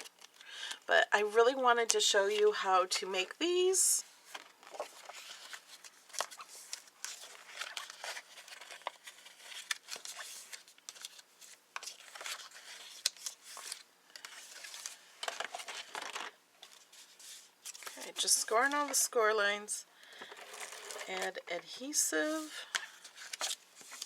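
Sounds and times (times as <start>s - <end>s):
paper rustling and scraping: 4.1s - 19.2s, 20.2s - 24.0s.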